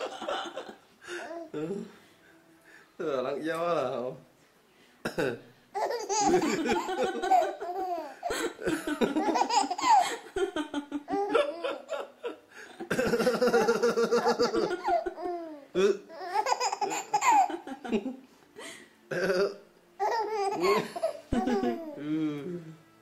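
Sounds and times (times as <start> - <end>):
baby laughing: 5.8 - 12.1, 12.9 - 17.9, 20.0 - 22.0.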